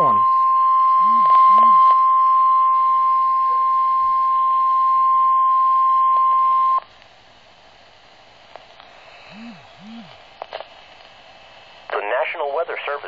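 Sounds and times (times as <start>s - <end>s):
steady alarm tone: 0.0s - 6.8s
faint radio hiss: 0.0s - 13.0s.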